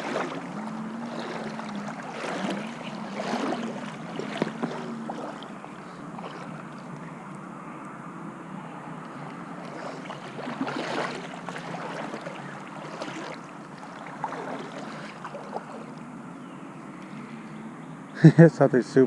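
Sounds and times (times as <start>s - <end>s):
water splashing: 0.0s - 7.5s, 8.9s - 16.2s
river water running: 0.0s - 19.0s.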